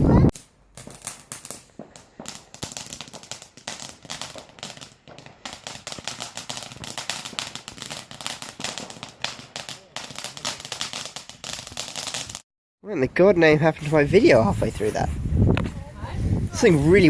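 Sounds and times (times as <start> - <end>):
firework crackling: 0.1 - 12.4.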